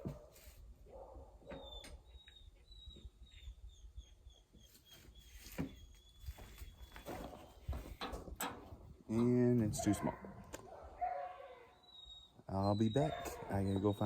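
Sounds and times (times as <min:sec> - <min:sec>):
bird chirping: 0:01.5 - 0:08.0, 0:09.8 - 0:14.0.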